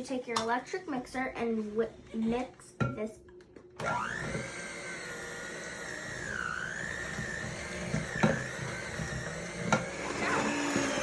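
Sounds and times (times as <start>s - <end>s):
electric mixer whining: 3.8s - 11.0s.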